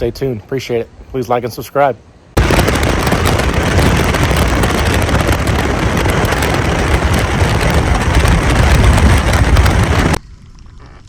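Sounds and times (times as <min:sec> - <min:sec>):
wind buffeting microphone: 0:02.4 - 0:10.8
boat hull on water: 0:02.4 - 0:11.0.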